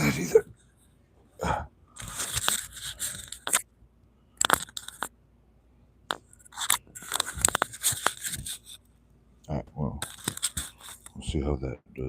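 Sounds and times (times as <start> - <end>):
handling scrapes and rustles: 2.0 - 3.6, 6.4 - 8.8, 10.0 - 11.2.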